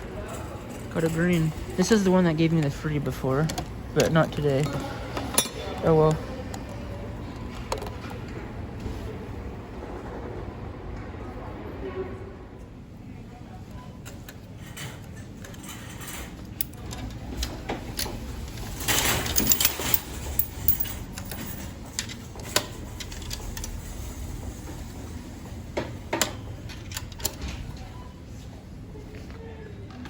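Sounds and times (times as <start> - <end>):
vending machine clicking and rattling: 0.0 - 8.4, 14.0 - 27.9.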